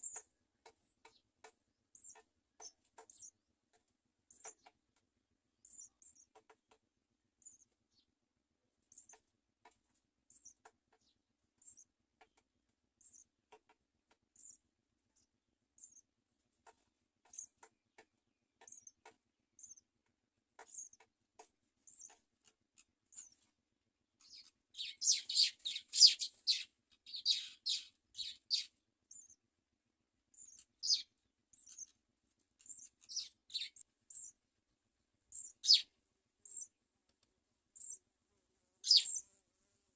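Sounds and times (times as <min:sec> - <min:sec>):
chicks begging calls: 0:24.8 - 0:26.6, 0:35.6 - 0:35.8, 0:38.9 - 0:39.2
nestlings cheeping: 0:35.4 - 0:35.8, 0:38.8 - 0:39.2.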